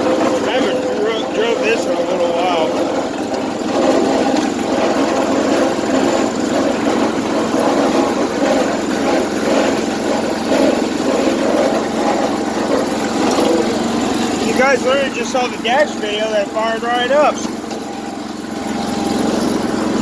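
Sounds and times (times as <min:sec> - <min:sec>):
small engine running: 0:00.0 - 0:20.0.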